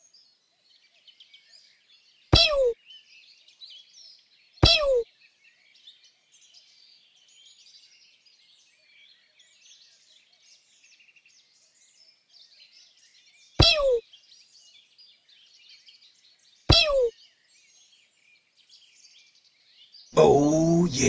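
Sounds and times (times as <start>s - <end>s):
small birds chirping: 0.0s - 20.7s
loud downward sliding bird call: 13.6s - 14.0s, 16.7s - 17.1s.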